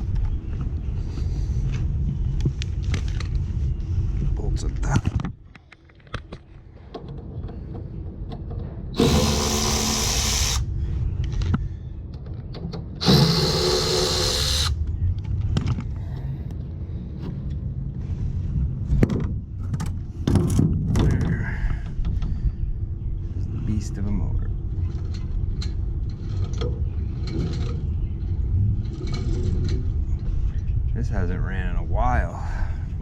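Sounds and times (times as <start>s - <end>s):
steady low rumble: 0.0s - 33.0s
cordless drill backing out bolts: 9.0s - 10.7s, 13.0s - 14.8s.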